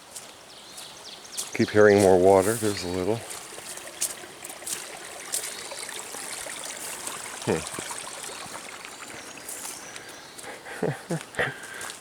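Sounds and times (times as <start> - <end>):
brook trickling: 0.0 - 12.0.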